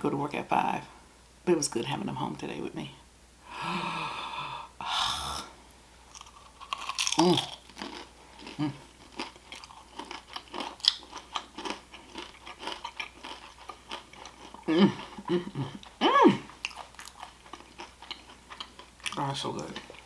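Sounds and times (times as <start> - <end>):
person chewing food: 6.1 - 20.0.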